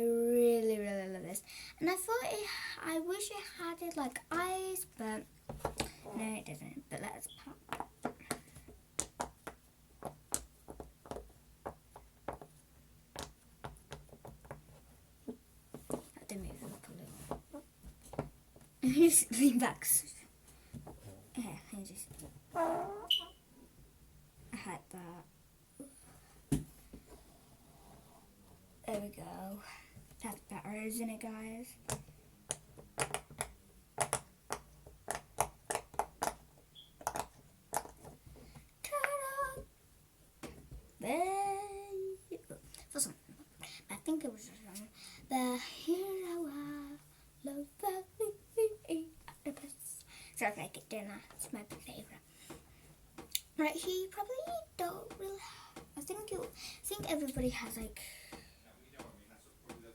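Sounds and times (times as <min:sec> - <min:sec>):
pop-it toy bubbles popping: 0:31.9 - 0:38.0.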